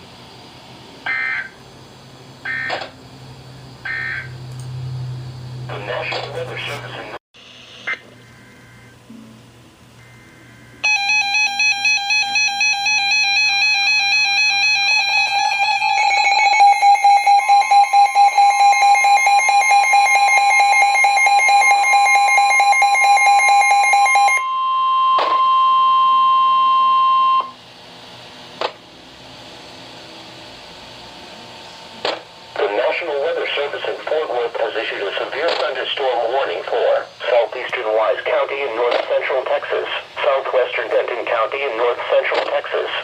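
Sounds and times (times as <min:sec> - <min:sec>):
steady warning alarm tone: 0:01.0 - 0:01.6, 0:02.4 - 0:09.0, 0:10.0 - 0:27.6.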